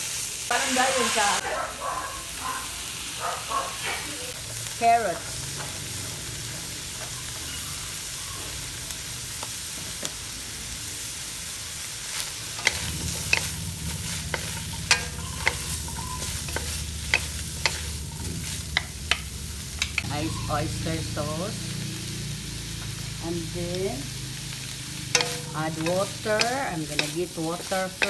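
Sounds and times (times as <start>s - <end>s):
food sizzling in a pan: 0.0s - 28.0s
spatula scraping a pan: 12.2s - 20.1s, 25.1s - 28.0s.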